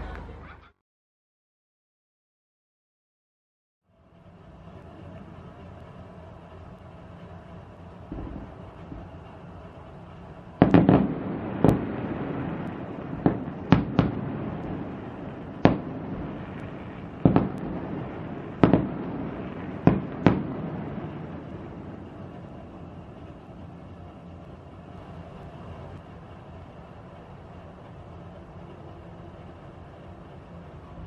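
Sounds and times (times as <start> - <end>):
low rumble: 3.9 - 31.0
distant firework bangs with echo: 8.1 - 24.2.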